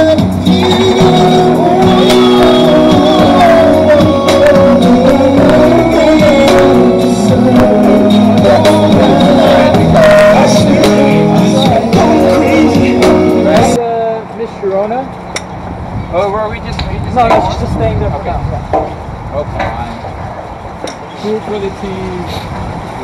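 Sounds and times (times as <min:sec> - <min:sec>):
song with singing over beat: 0:00.0 - 0:13.8.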